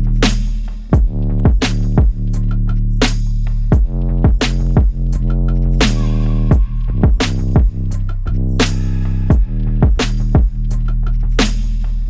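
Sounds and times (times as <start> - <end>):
electronic music with heavy bass: 0.0 - 12.0.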